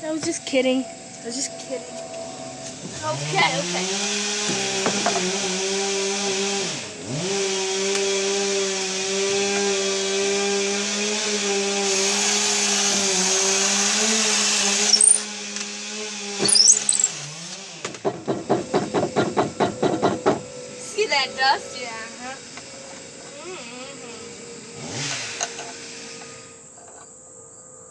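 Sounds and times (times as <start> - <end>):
electric drill boring: 1.0 - 26.8
drill squeals: 14.2 - 15.3, 16.3 - 17.3, 18.9 - 27.2.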